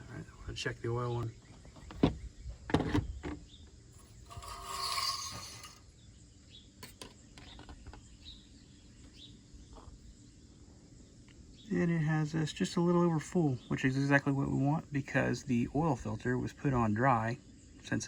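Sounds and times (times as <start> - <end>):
oil dipstick scraping in tube: 4.0 - 5.8.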